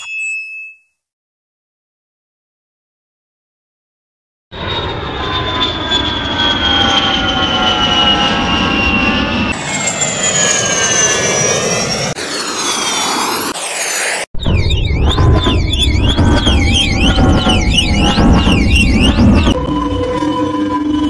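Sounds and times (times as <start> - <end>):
low vehicle rumble: 14.4 - 21.0.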